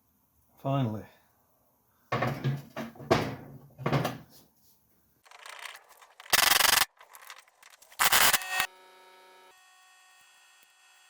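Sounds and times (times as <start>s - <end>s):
metal part scraping and rubbing: 5.3s - 8.7s.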